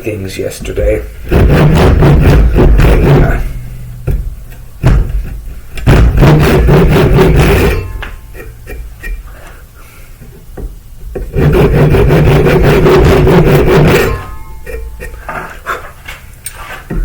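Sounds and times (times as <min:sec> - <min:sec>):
wood being rubbed by hand: 0:01.3 - 0:03.6, 0:11.3 - 0:17.0.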